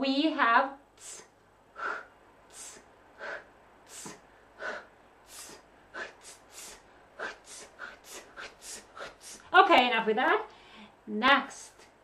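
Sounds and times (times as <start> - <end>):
woman pronouncing hissy consonant: 0.9 - 1.3.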